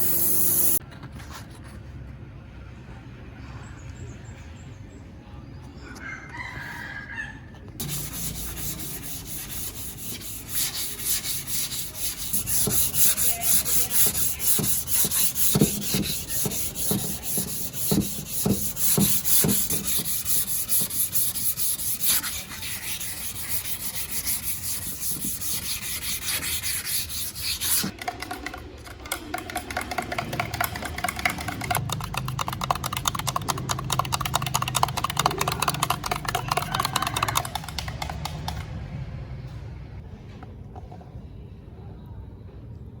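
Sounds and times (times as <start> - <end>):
power sanding rasp: 7.8 - 27.9.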